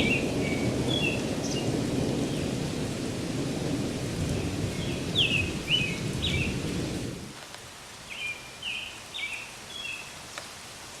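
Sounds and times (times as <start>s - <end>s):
bird chirping: 0.0s - 2.5s, 4.7s - 6.6s, 8.1s - 10.1s
thunder rumbling: 0.0s - 7.3s
steady rain: 0.0s - 11.0s.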